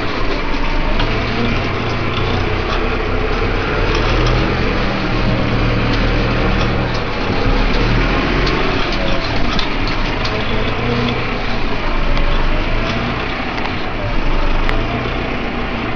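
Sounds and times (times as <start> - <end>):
tractor diesel engine running: 0.0 - 15.9.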